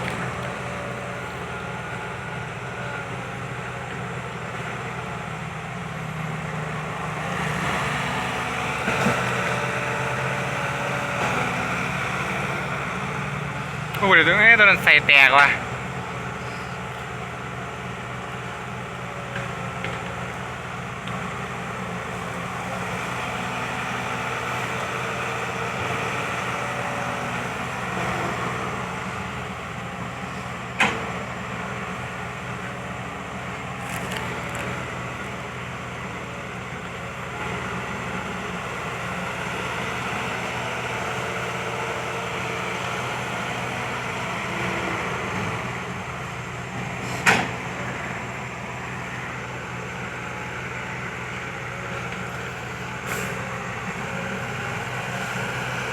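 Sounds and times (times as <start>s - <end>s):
excavator diesel engine running: 0.0s - 55.9s.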